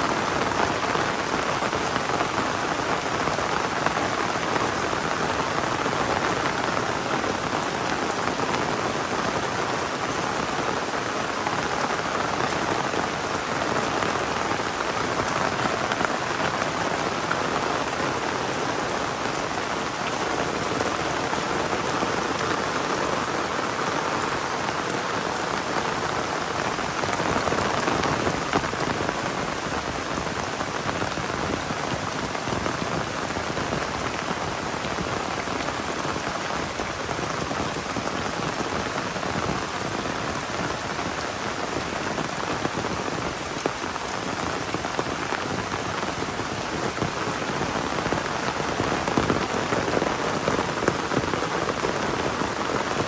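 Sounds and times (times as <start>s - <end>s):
torrential rain pouring: 0.0s - 53.0s.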